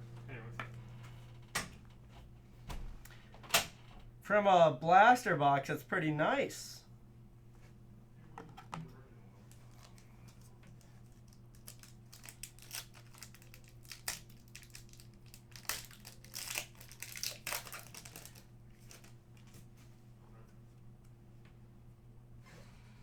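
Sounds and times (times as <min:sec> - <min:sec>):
wrapper crinkling and tearing: 0:09.5 - 0:19.6.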